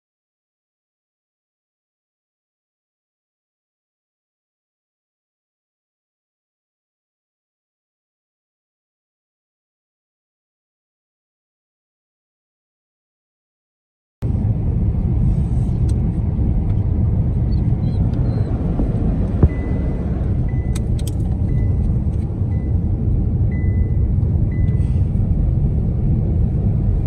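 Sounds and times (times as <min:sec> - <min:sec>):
car driving: 0:14.2 - 0:27.0
low road rumble: 0:14.2 - 0:27.0.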